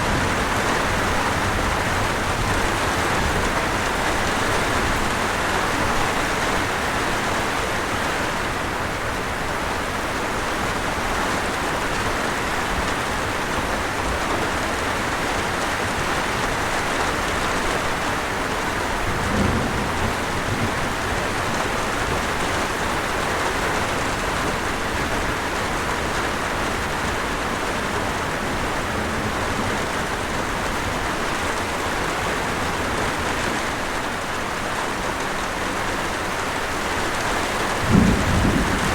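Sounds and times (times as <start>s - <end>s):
waterfall rushing: 0.0s - 19.2s
steady rain: 0.0s - 38.9s.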